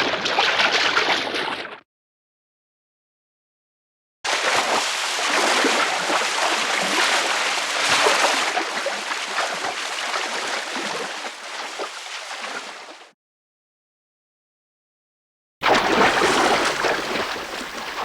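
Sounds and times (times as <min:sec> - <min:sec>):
churning splashing water: 0:00.0 - 0:01.8, 0:04.3 - 0:13.1, 0:15.6 - 0:18.0.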